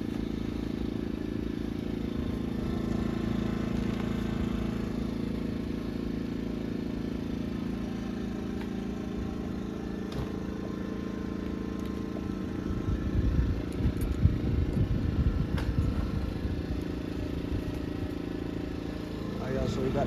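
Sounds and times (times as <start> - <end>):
engine running steadily: 0.0 - 20.0.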